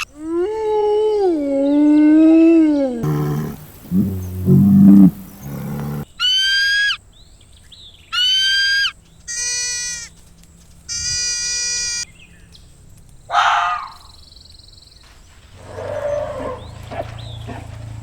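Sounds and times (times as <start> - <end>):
animal calls: 3.0 - 7.0, 8.1 - 10.1.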